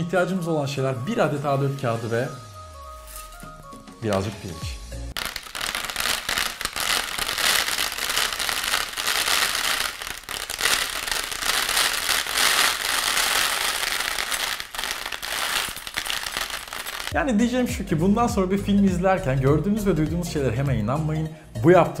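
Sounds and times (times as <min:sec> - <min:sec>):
rice grains crackling on paper: 0:05.2 - 0:17.1.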